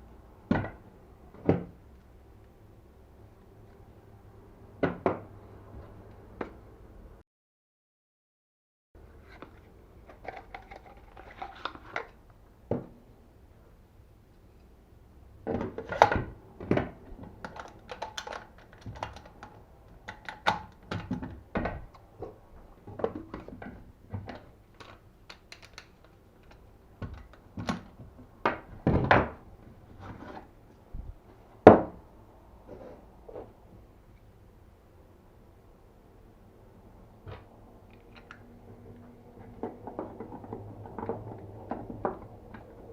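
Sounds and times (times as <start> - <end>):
clicks and knocks of parts latching: 15.6 - 22.0, 24.2 - 28.0.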